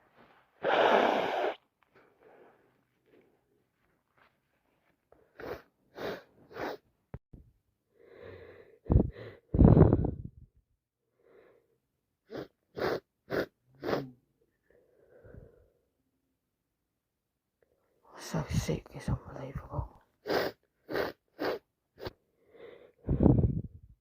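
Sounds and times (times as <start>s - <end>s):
woman sniffing: 0.6s - 1.6s, 5.2s - 6.8s, 12.2s - 14.2s, 20.2s - 23.4s.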